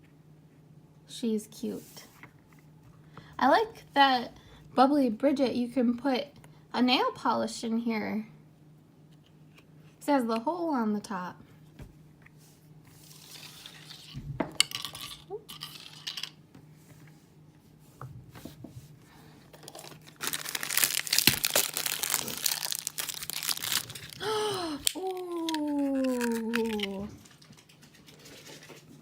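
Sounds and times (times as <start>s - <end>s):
plastic packet crinkling and tearing: 19.6s - 27.8s
loud crackling rustle: 19.8s - 24.2s
person saying ooh: 24.2s - 27.2s.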